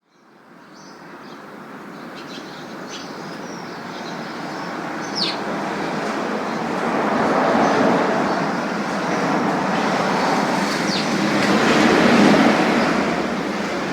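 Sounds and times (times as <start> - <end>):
birds chirping: 2.0 - 5.6, 10.2 - 13.9
road traffic rumble: 2.7 - 13.9.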